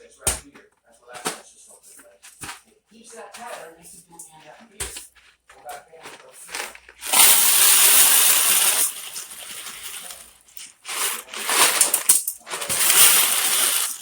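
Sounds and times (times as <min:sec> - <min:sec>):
dry macaroni rattling out of box: 0:06.3 - 0:14.0.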